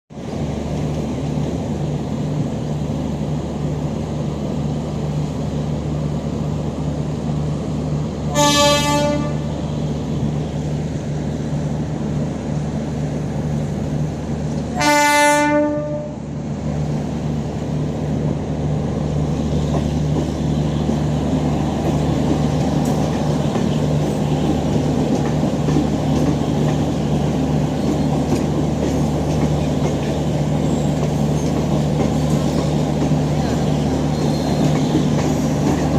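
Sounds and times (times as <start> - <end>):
train rumble: 0.1 - 35.9
train horn blasts: 8.3 - 9.6, 14.7 - 16.3.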